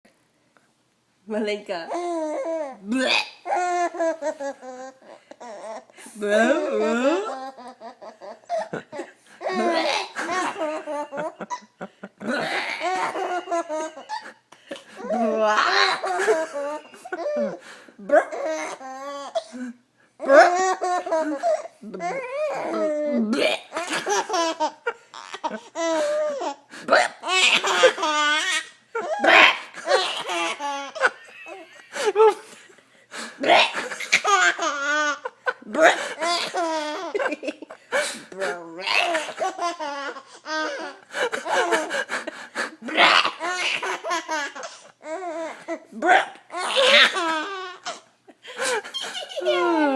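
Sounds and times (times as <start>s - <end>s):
baby laughing: 3.4s - 5.9s, 6.7s - 17.6s, 18.2s - 19.6s, 20.2s - 32.4s, 33.4s - 37.8s, 38.4s - 42.0s, 42.9s - 45.9s, 46.5s - 49.7s
baby drawn-out voice: 21.8s - 23.4s.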